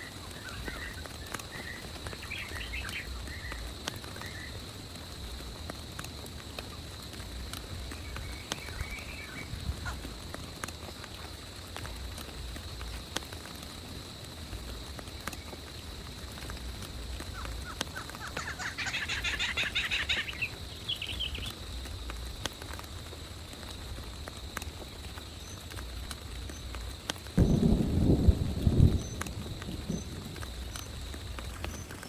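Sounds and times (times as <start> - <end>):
rain drops ticking: 0.0 - 32.0
low wind rumble: 6.9 - 10.6, 26.9 - 32.0.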